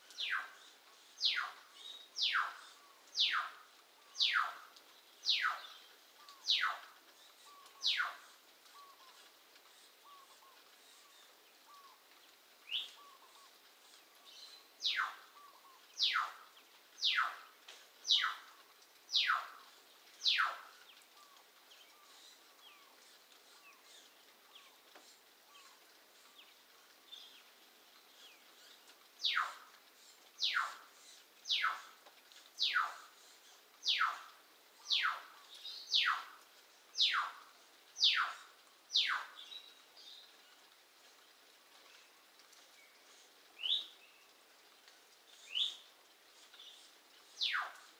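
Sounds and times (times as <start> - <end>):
bird whistling calls: 1.2 - 4.6, 5.2 - 6.9, 7.5 - 9.2, 14.8 - 16.4, 17.0 - 17.4, 18.1 - 18.5, 19.1 - 19.6, 20.2 - 21.4, 29.2 - 29.6, 30.4 - 30.8, 31.5 - 31.9, 32.6 - 33.1, 33.8 - 36.4, 37.0 - 37.4, 38.0 - 39.4, 45.5 - 45.8, 47.4 - 47.8.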